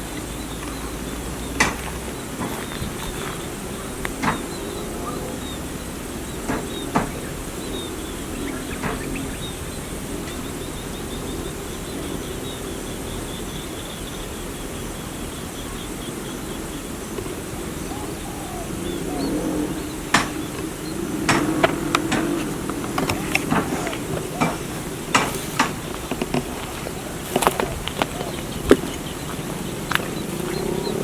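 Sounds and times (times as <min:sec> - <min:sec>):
low wavering bird calls: 0:00.0 - 0:31.0
steady background noise: 0:00.0 - 0:31.0.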